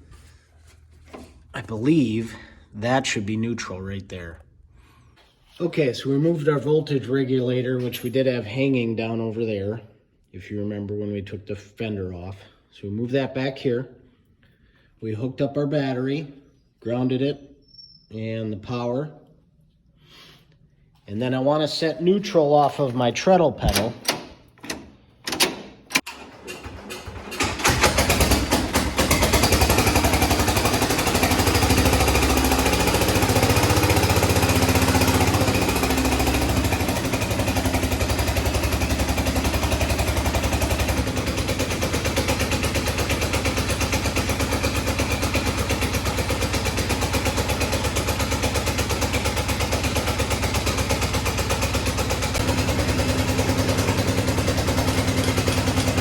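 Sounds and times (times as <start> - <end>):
garden tractor engine running: 23.6 - 56.0.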